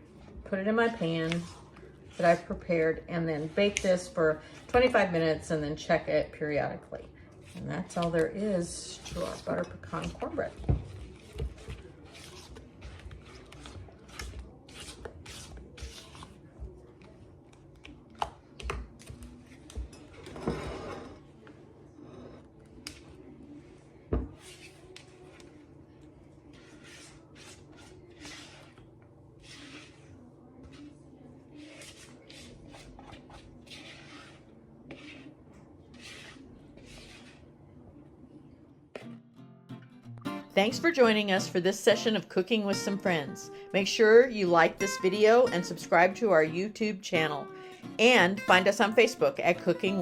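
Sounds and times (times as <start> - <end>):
utensil scraping mixing bowl: 0.0 - 5.3, 7.4 - 16.4, 26.5 - 37.6.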